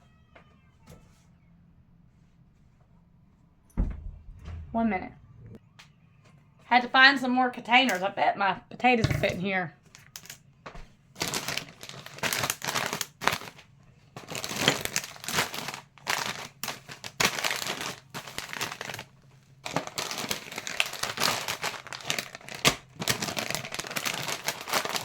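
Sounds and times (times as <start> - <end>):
packets crinkling: 9.9 - 10.4, 11.1 - 25.0.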